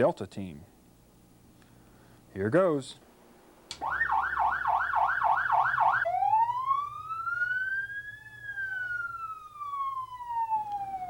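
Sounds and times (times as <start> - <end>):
faint low hum: 0.0 - 11.0
electronic siren: 3.8 - 11.0.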